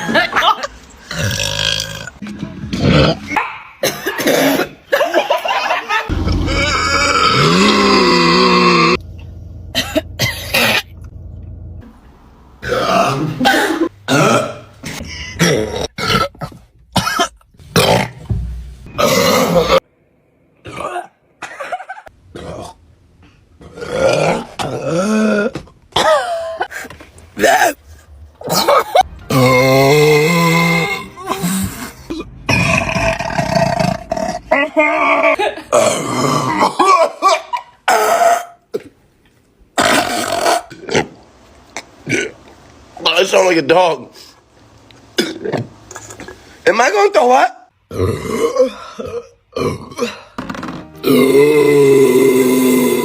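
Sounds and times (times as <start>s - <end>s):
person burping loudly: 1.1s - 2.2s, 6.1s - 9.0s, 12.6s - 18.2s, 18.9s - 19.8s, 20.6s - 21.2s, 22.3s - 22.8s, 23.6s - 26.7s, 28.4s - 37.3s, 39.8s - 41.2s, 42.0s - 42.4s, 45.2s - 45.7s, 47.9s - 53.0s.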